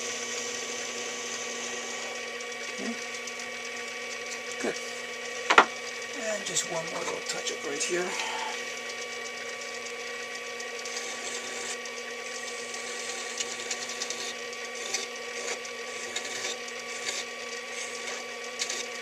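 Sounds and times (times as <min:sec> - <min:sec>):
lathe motor whine: 0:00.0 - 0:19.0
tool bit cutting metal: 0:00.0 - 0:19.0.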